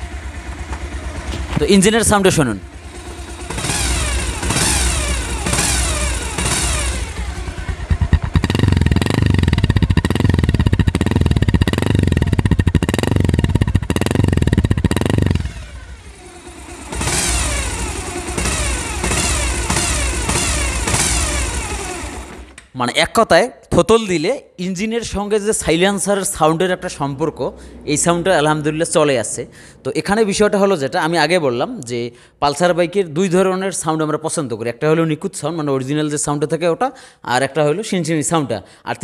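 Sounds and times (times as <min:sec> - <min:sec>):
high whining gear note: 0:00.0 - 0:22.6, 0:25.6 - 0:31.1
motorcycle engine revving: 0:00.0 - 0:22.7, 0:25.6 - 0:30.9.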